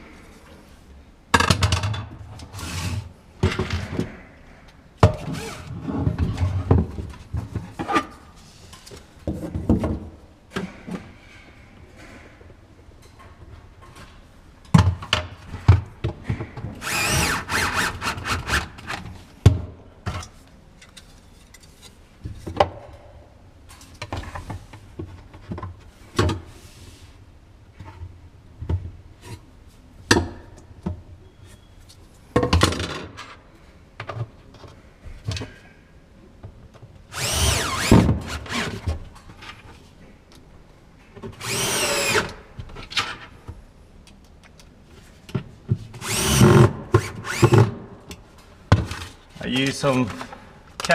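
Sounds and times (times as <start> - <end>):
cordless drill driving screws: 16.8 - 18.9, 37.1 - 38.8, 41.4 - 42.4, 46.0 - 47.7.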